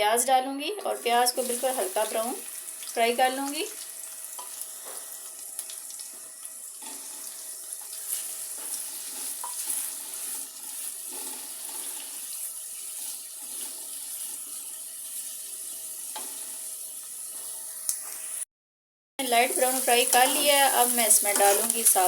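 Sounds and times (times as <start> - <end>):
onions sizzling in hot oil: 0.9 - 18.4, 19.3 - 22.0
oil spattering crackles: 19.4 - 22.0.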